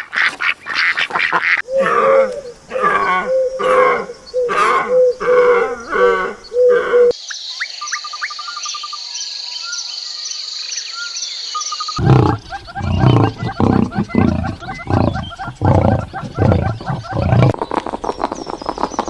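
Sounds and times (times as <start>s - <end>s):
birds chirping: 0.6s - 19.0s
big cat roaring: 12.0s - 17.6s.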